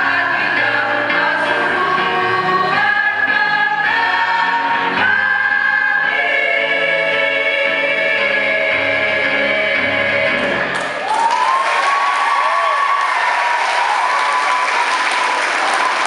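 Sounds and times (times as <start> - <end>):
choir singing: 0.0 - 11.0.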